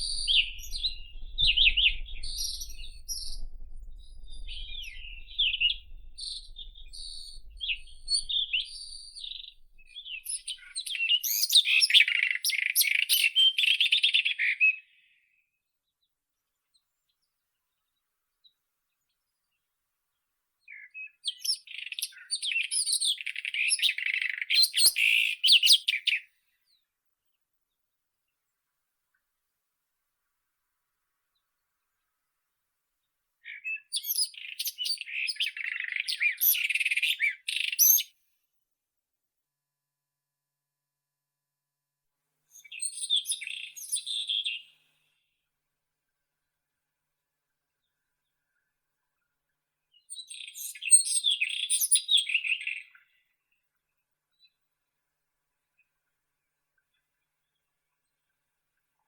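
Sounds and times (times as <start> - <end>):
faint low rumble: 0.0 - 10.6
bird singing: 0.0 - 14.7, 42.6 - 44.8.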